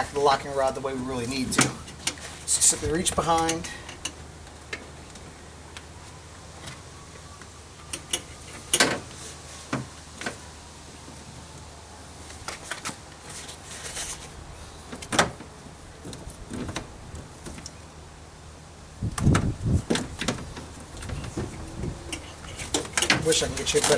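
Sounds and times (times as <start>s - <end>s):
rustling: 0.0s - 6.9s, 12.1s - 17.8s, 19.3s - 23.9s.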